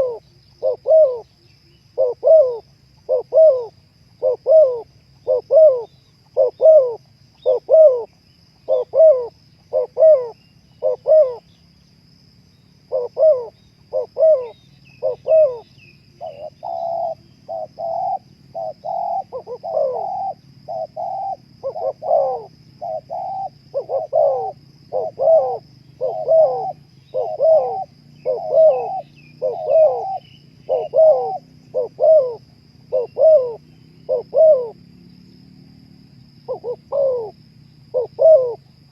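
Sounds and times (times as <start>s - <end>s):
dove cooing: 0.0s - 11.5s, 12.8s - 34.8s, 36.5s - 38.9s
small bird chirps: 12.6s - 34.8s.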